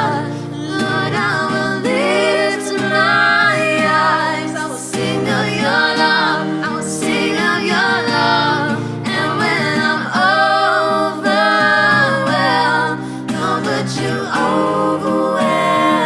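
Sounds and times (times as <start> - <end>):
acoustic guitar: 0.0 - 16.0
woman singing: 0.0 - 16.0.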